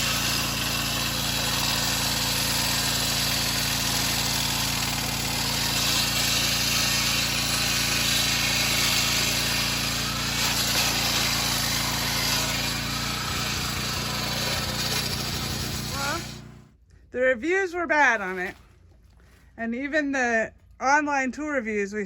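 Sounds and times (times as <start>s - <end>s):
saw motor low hum: 0.0s - 16.8s
concrete saw grinding: 0.0s - 19.5s.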